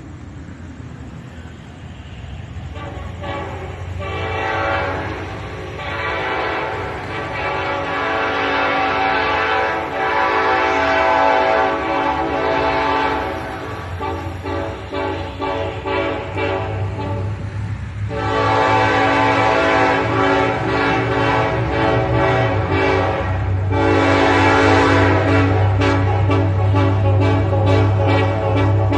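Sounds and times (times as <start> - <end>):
diesel engines droning: 0.0 - 28.9
locomotive air horn blasts: 2.0 - 28.9.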